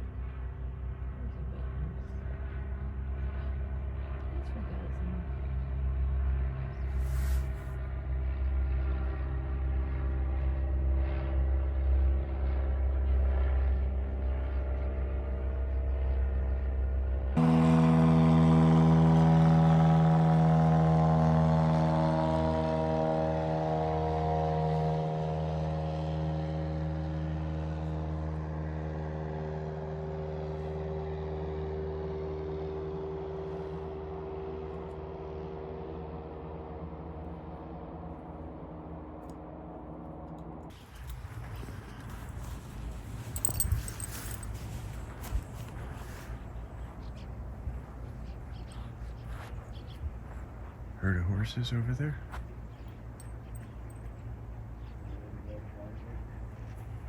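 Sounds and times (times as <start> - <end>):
engine low hum: 0.0 - 57.0
higher engine drone: 0.0 - 57.0.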